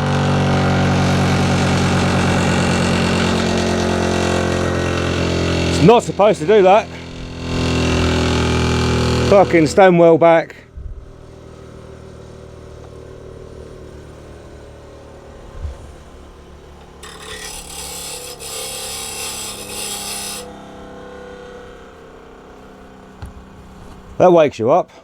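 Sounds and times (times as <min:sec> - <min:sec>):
grinder humming: 0:00.0 - 0:09.8, 0:11.2 - 0:24.2
metal grinding hiss: 0:17.0 - 0:20.6.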